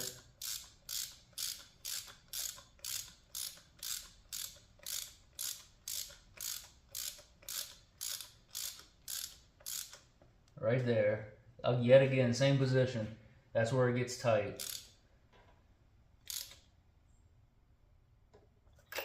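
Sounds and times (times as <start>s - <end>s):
ratchet clicking: 0.0s - 10.1s, 14.6s - 15.0s, 16.2s - 16.7s.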